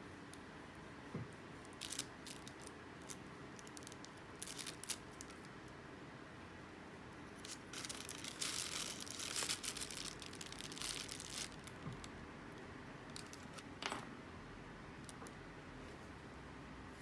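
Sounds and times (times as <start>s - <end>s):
crinkling and rustling: 1.6s - 5.8s, 7.3s - 12.2s, 13.1s - 14.0s.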